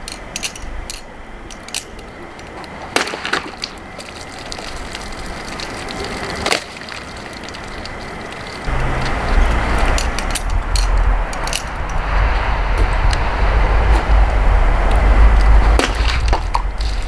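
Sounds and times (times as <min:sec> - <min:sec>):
blade chopping through bottles: 0:15.8 - 0:17.0.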